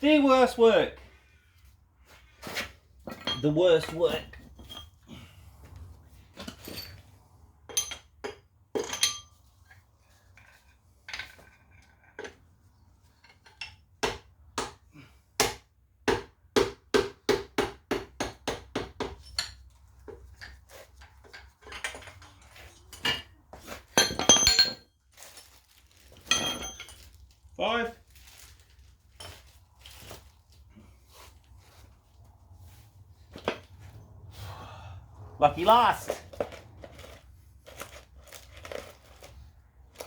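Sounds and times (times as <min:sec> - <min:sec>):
metal parts clattering: 0:23.9 - 0:27.2
metal clinks: 0:24.0 - 0:24.9, 0:26.2 - 0:27.2.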